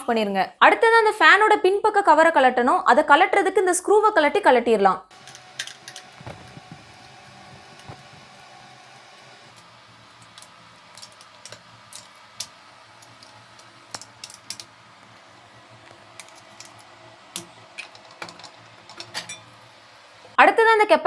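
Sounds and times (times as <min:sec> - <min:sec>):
fan cover being handled: 0:05.2 - 0:08.8.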